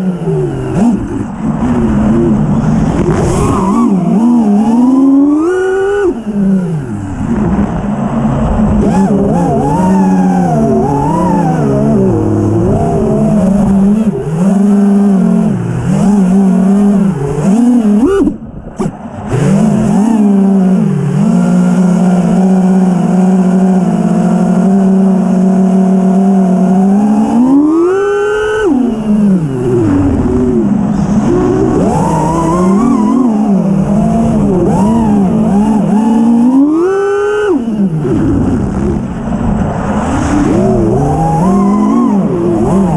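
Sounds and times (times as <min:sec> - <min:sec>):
quadcopter motors whining: 0:00.0 - 0:24.7, 0:25.6 - 0:39.2.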